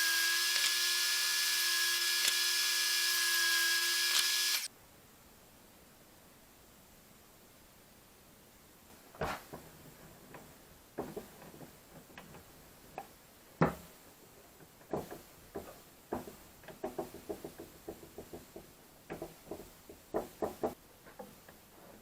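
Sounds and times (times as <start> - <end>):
wood knocking on a workbench: 14.9 - 21.4.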